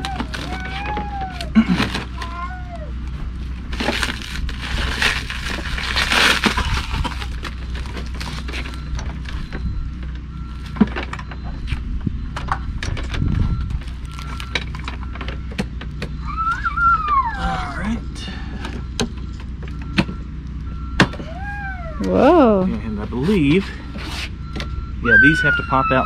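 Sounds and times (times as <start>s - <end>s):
packaging crinkling and rustling: 0.0s - 2.8s, 3.4s - 9.6s, 13.8s - 15.0s.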